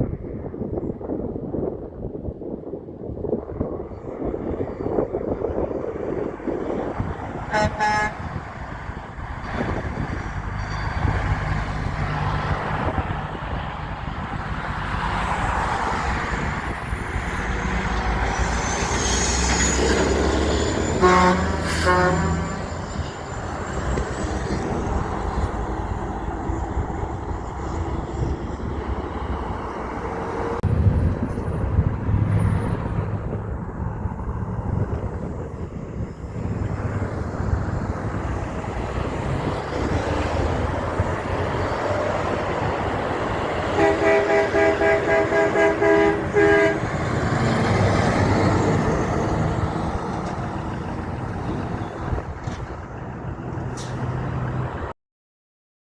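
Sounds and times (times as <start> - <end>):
heavy trucks driving past: 3.4 - 54.9
truck horn blasts: 7.3 - 8.5, 18.0 - 23.0, 43.6 - 47.6.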